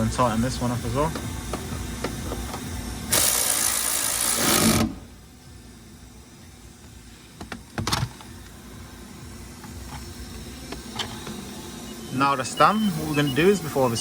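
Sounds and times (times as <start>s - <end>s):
cordless power tool running: 0.0s - 5.6s.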